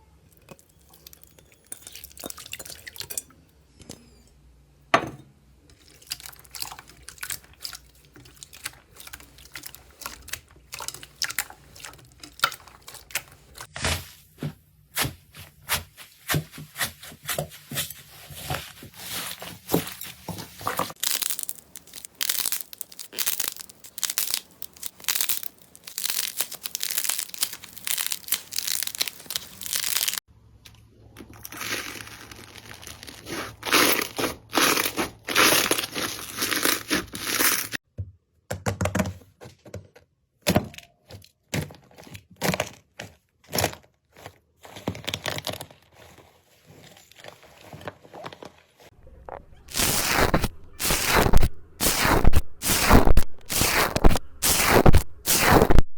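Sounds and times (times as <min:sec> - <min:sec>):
slime squeezed by hand: 0:49.7 - 0:55.9.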